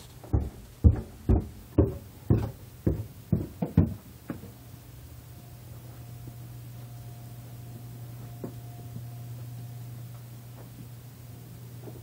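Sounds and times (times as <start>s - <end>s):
steady low hum: 0.0s - 12.0s
knocks: 0.3s - 4.5s.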